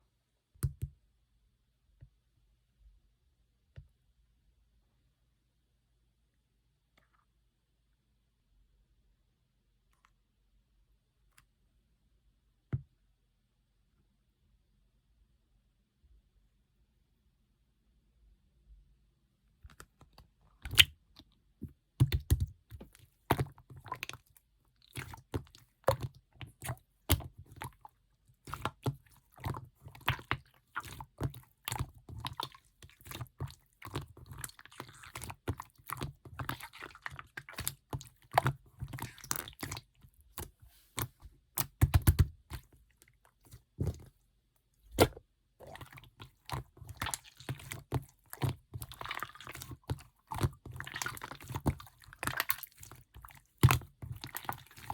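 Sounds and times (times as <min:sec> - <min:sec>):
slime crackling: 0:24.9 - 0:42.7, 0:44.9 - 0:54.9.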